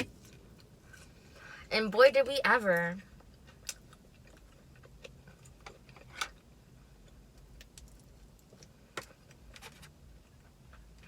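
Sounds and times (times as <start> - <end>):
close-up chewing: 3.2 - 9.5.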